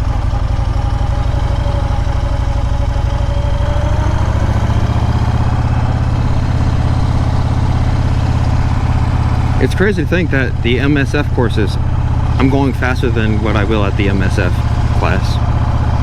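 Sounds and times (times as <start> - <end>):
motorcycle engine running: 0.0 - 16.0.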